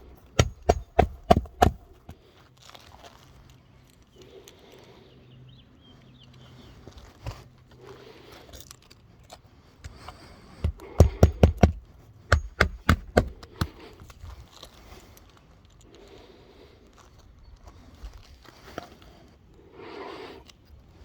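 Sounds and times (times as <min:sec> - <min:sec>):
hammer striking nails: 0:00.3 - 0:01.8, 0:10.6 - 0:13.8.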